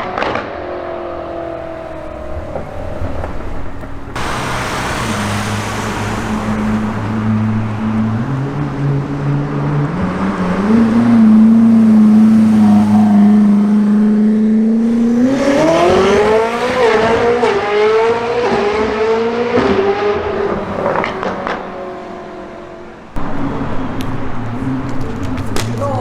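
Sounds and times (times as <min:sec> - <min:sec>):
exhaust cracks: 0:00.0 - 0:08.7, 0:19.6 - 0:22.3
car engine accelerating: 0:00.0 - 0:25.8.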